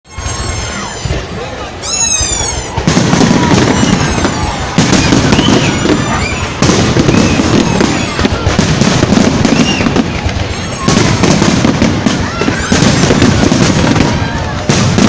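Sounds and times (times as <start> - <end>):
fireworks crackling and popping: 0.1 - 15.0.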